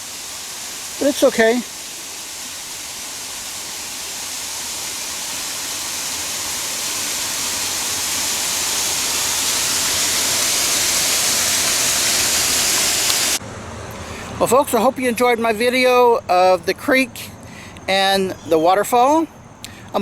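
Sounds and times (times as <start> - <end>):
waterfall pouring over boulders: 0.0 - 13.4.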